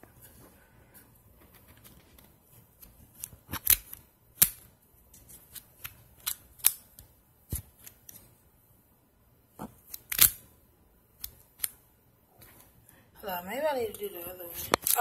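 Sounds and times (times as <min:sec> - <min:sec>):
plastic clicks and snaps: 0:14.6 - 0:15.0.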